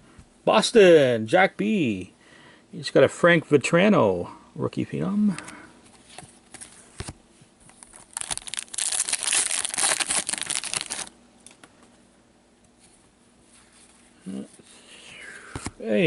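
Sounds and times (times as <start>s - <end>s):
wrapper tearing and crinkling: 7.8s - 11.1s.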